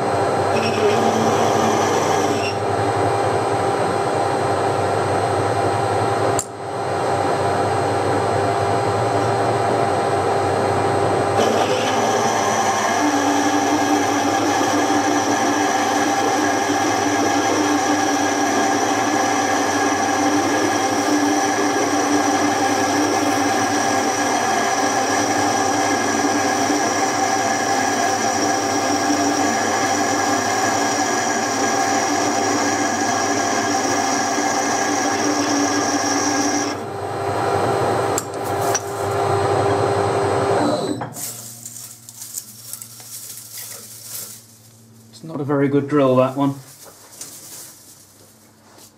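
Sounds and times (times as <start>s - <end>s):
metal lathe whining: 0.4s - 2.8s, 11.4s - 36.9s.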